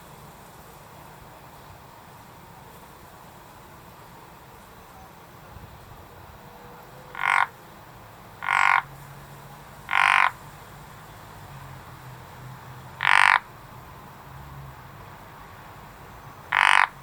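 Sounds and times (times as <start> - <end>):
frog croaking: 7.1 - 7.6, 8.4 - 8.9, 9.9 - 10.4, 12.9 - 13.6, 16.4 - 17.0.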